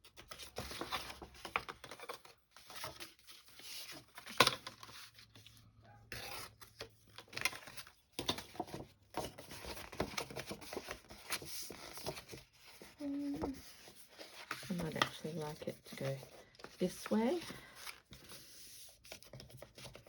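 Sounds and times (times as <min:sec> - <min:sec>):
paper tearing and rustling: 0:06.1 - 0:08.0.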